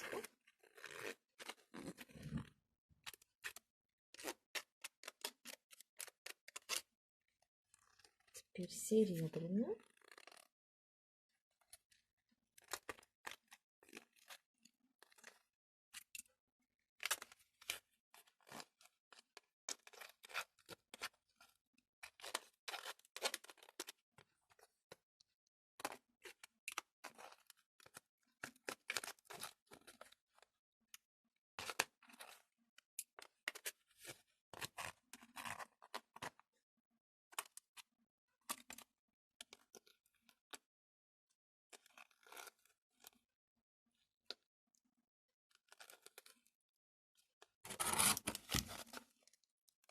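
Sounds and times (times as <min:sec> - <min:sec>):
knife scraping: 0:47.7 - 0:48.7.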